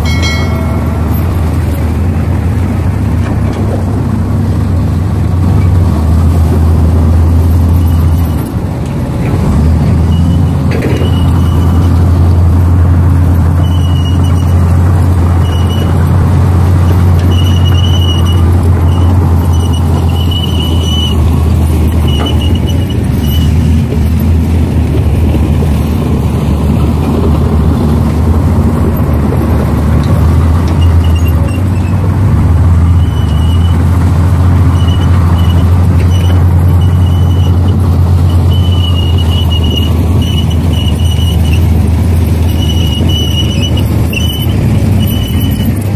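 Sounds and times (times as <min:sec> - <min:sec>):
diesel machinery droning: 0:00.0 - 0:45.9
high-pitched squeals: 0:13.5 - 0:14.7, 0:17.0 - 0:23.7, 0:32.8 - 0:45.9.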